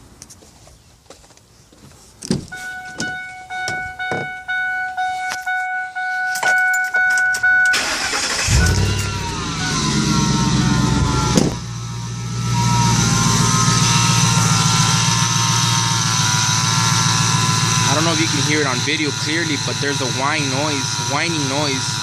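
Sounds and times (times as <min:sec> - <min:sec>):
electronic warning chime: 0:02.5 - 0:10.3
truck engine cranking and starting: 0:06.3 - 0:22.0
engine fast idle: 0:07.7 - 0:22.0.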